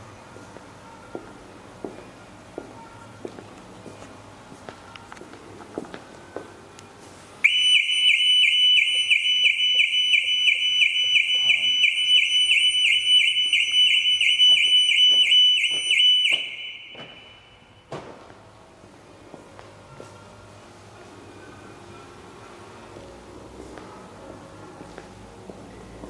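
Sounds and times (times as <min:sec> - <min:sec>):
car alarm siren whooping: 0:07.4 - 0:17.6.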